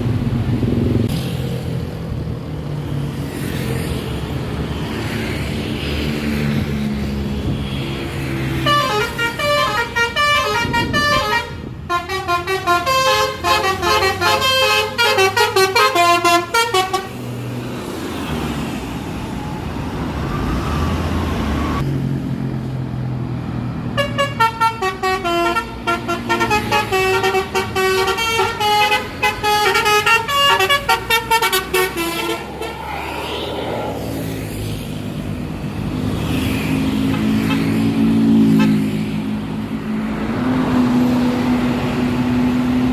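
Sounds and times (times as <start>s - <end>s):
multi-tone air horn melodies: 8.6s - 17.2s, 24.0s - 32.9s.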